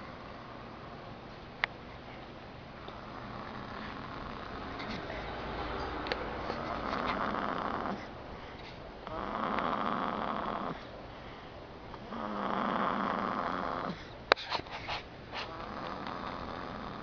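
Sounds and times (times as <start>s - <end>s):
snoring: 2.9s - 5.2s, 6.6s - 8.1s, 9.0s - 10.9s, 12.0s - 14.1s, 15.4s - 17.0s.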